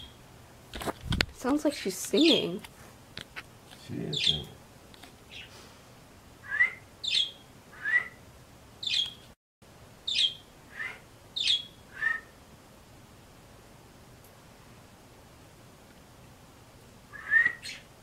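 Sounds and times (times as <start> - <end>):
bird sharp chirps: 4.1 - 4.5, 6.5 - 8.2, 8.8 - 9.2, 10.1 - 12.2.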